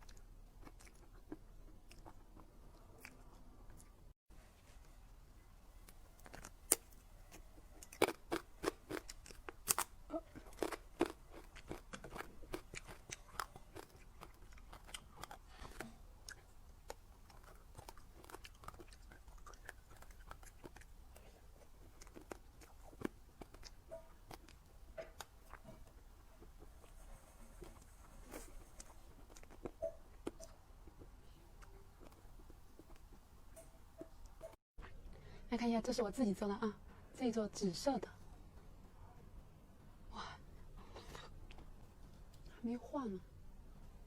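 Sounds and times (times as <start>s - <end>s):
quiet chewing: 0.0s - 35.2s, 40.5s - 42.6s.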